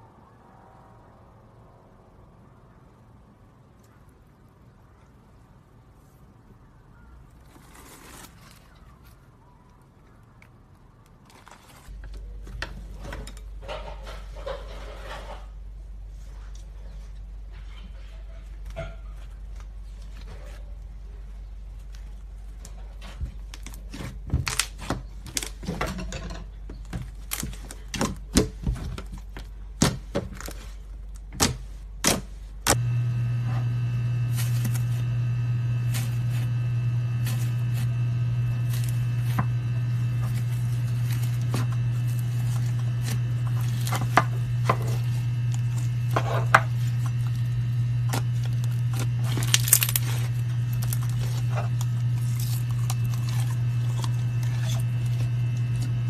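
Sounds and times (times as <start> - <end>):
steady low hum: 31.8 - 56.0.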